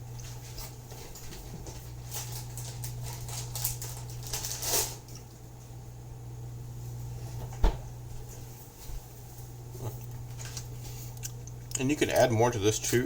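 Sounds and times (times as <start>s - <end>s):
steady low hum: 0.0s - 13.0s
crunching fried cheese: 2.0s - 5.2s.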